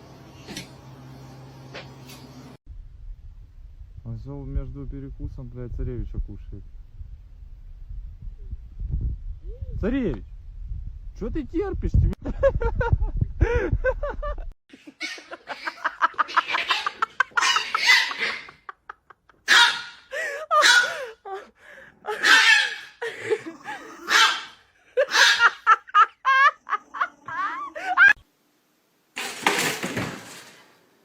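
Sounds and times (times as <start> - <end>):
people laughing hard: 12.2 - 19.5, 24.9 - 28.2.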